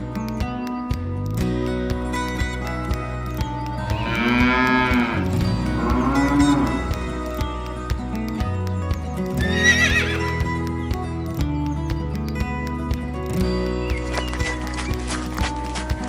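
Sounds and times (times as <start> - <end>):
background music: 3.7 - 8.3
cattle mooing: 3.8 - 7.3
horse whinny: 3.8 - 7.3.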